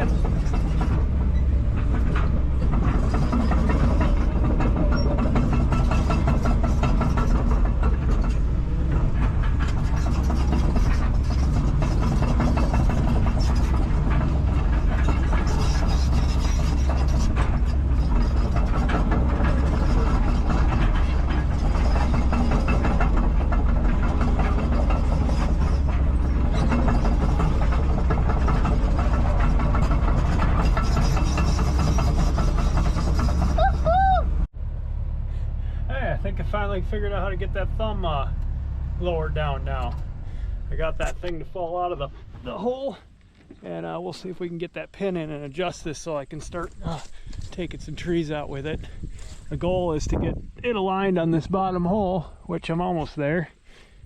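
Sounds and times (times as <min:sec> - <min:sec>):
steel tracks moving: 0:00.0 - 0:34.5
excavator diesel engine running: 0:00.0 - 0:53.0.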